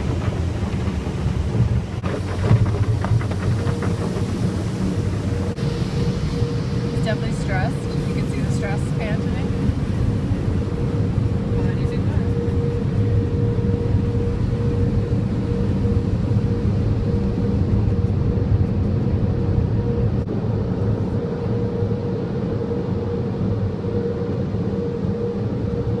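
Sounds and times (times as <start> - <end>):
car engine drone inside vehicle: 0.0 - 26.0
faint steady hum: 2.0 - 26.0.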